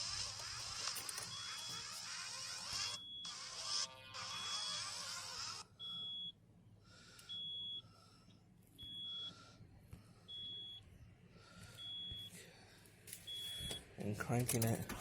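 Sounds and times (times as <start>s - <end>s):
electronic warning beep: 0.3s - 3.6s, 4.2s - 4.9s, 5.8s - 6.4s, 7.3s - 7.9s, 8.8s - 9.4s, 10.3s - 10.9s, 11.8s - 12.4s, 13.3s - 13.9s.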